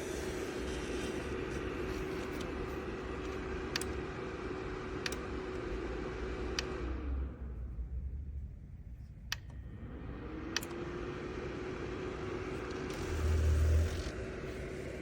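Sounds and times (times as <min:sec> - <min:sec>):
heater fan humming: 0:00.0 - 0:07.7
sharp clicks: 0:05.0 - 0:05.3.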